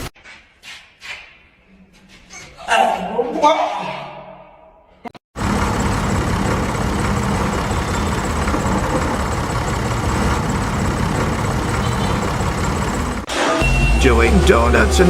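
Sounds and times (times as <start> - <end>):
heavy vehicle engine running: 5.4 - 15.0.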